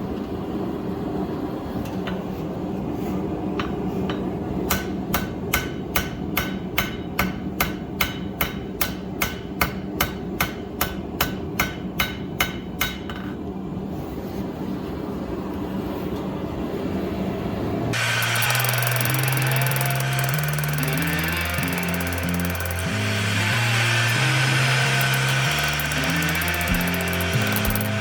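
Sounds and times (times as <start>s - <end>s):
hammer ringing on anvil: 4.7s - 13.2s, 18.0s - 28.0s
steady drone: 17.9s - 28.0s.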